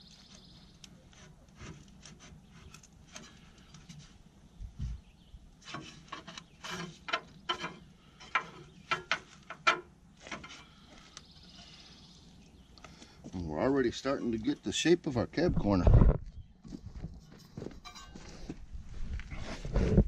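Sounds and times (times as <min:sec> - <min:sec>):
sheet metal knocking and scraping: 0:05.6 - 0:10.7.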